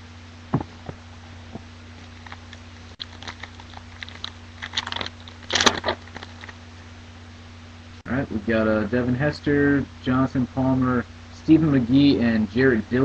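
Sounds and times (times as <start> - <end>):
low electrical hum: 0.0 - 13.0
foil wrapper crinkling and tearing: 1.9 - 6.6.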